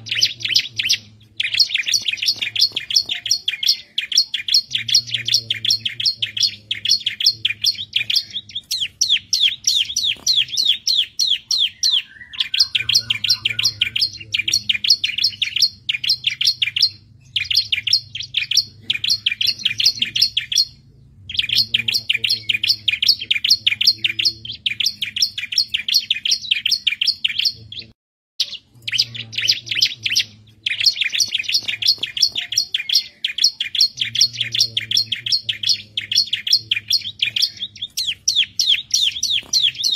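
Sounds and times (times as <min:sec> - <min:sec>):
bird singing rapid high chirps: 0:00.0 - 0:39.9.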